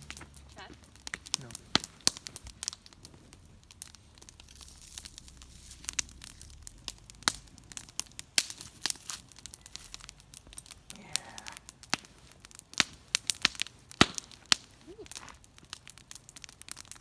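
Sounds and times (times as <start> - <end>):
campfire crackling and popping: 0.0 - 17.0
faint hiss: 0.0 - 17.0.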